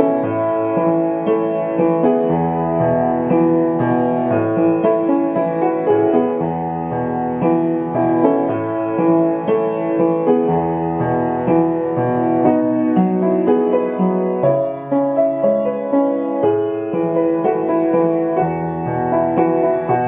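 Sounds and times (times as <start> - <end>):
soft piano chords: 0.0 - 20.0.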